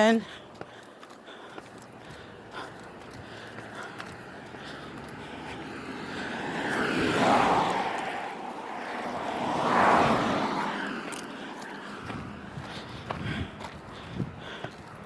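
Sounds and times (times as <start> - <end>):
cars passing on road: 0.0 - 15.0.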